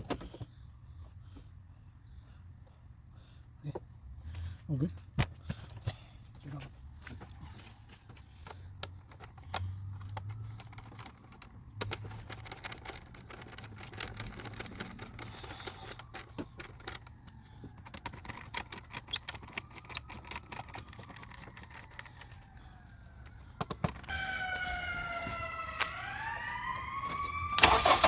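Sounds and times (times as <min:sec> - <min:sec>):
tools and parts clicking and rattling: 0:06.6 - 0:22.5
faint siren wailing: 0:09.2 - 0:28.0.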